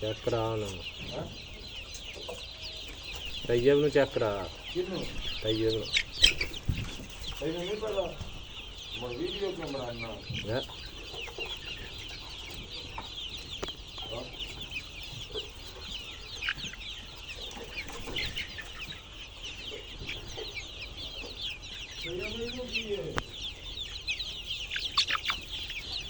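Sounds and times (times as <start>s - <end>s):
chicks peeping: 0.0s - 26.0s
lower chick calls: 0.0s - 26.0s.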